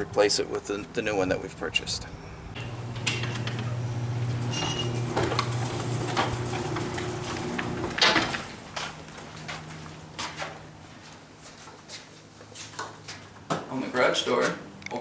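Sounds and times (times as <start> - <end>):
low motor hum: 2.1 - 10.8.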